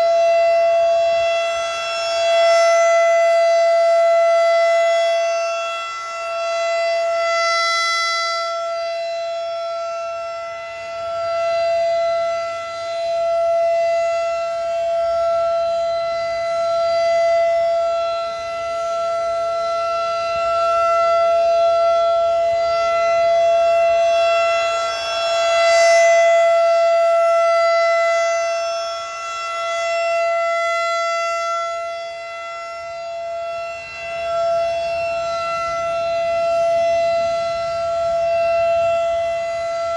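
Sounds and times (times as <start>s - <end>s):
rotating warning siren steady tone: 0.0s - 39.9s.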